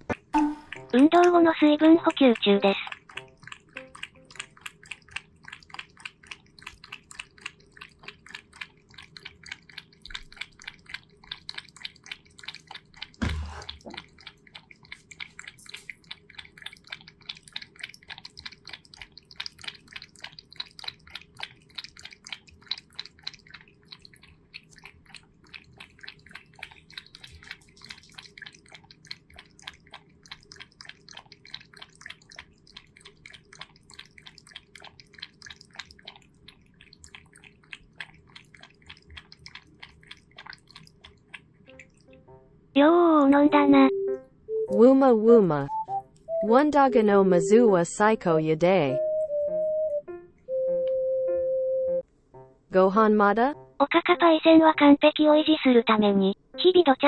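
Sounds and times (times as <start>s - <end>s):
cat lapping water: 0.0s - 43.8s
loud thump: 13.2s - 13.8s.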